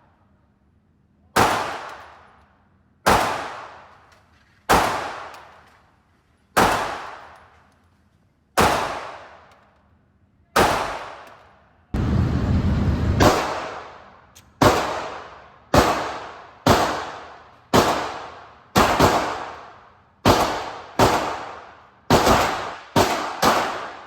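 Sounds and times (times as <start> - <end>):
pistol shots with echo: 1.4 - 2.4, 3.0 - 4.0, 4.7 - 5.6, 6.6 - 7.5, 8.6 - 9.5, 10.6 - 11.6, 13.2 - 24.0.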